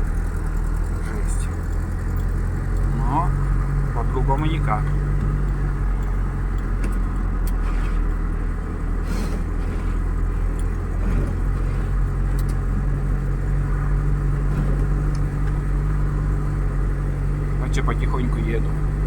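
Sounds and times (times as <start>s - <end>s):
vehicle engine running under load: 0.0s - 19.0s
knocks and rattles: 9.5s - 12.9s, 14.3s - 16.0s.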